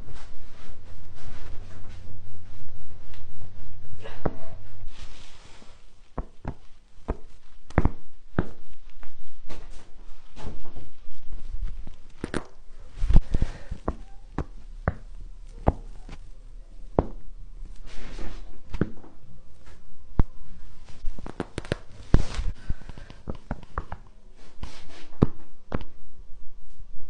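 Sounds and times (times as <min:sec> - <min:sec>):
soft rustling: 0:00.0 - 0:25.5
spine joints cracking: 0:06.0 - 0:17.8, 0:20.9 - 0:24.1.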